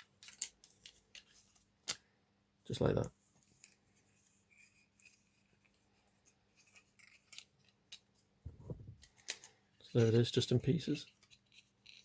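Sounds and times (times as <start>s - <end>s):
plastic parts rubbing: 3.4s - 12.0s.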